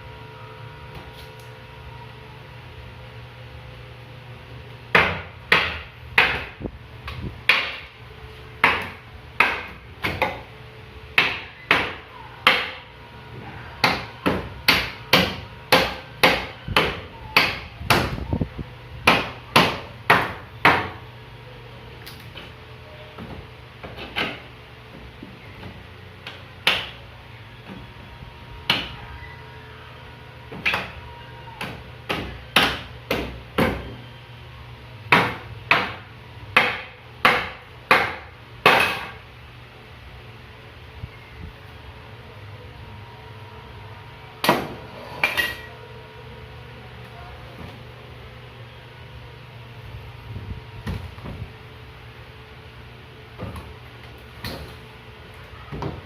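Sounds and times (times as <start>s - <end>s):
hammer striking wooden cabinet: 4.9s - 6.6s, 7.5s - 7.9s, 8.6s - 10.4s, 11.2s - 12.8s, 13.8s - 18.1s, 19.0s - 21.0s, 31.6s - 33.9s, 35.1s - 36.0s, 36.6s - 39.2s.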